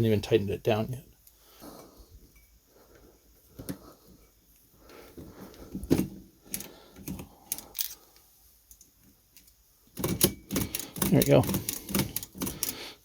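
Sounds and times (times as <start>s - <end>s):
typewriter clicking and clacking: 10.0s - 12.8s.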